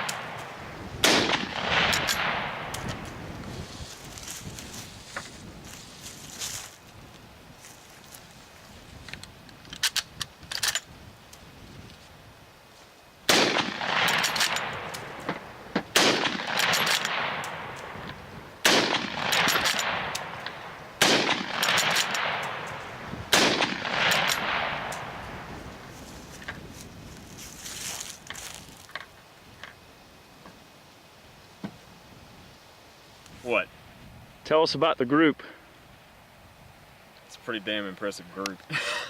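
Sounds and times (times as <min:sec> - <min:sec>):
sharp metallic rifle clicks: 0:00.0 - 0:03.1, 0:09.6 - 0:10.9, 0:13.3 - 0:25.1
rifle shots with long echo: 0:00.0 - 0:03.2, 0:13.3 - 0:25.9.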